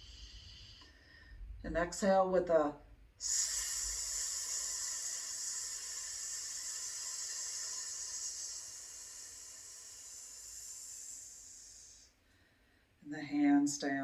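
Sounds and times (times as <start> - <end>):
person exhaling hiss: 0.0 - 1.4, 3.2 - 12.2.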